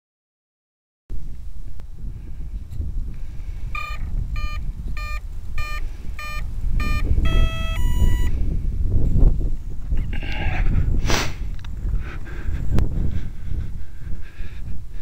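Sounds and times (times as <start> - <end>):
wind rumble on microphone: 1.1 - 15.0
electronic beeps and tones: 3.8 - 8.3.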